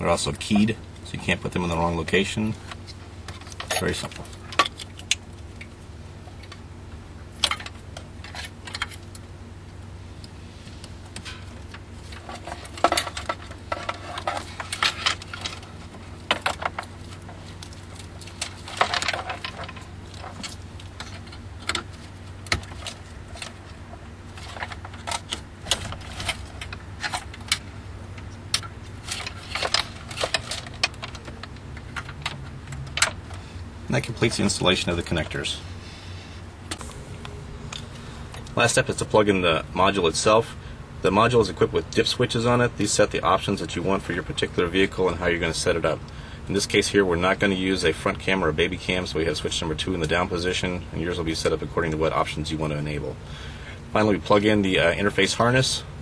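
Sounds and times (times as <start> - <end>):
plugs and wires rattling: 0.0 - 5.7, 11.0 - 35.6
steady low hum: 0.0 - 56.0.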